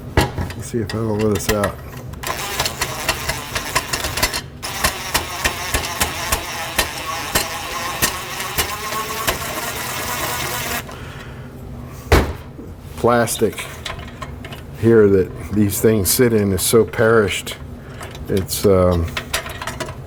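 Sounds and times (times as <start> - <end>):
power driver whirring: 1.4 - 11.3.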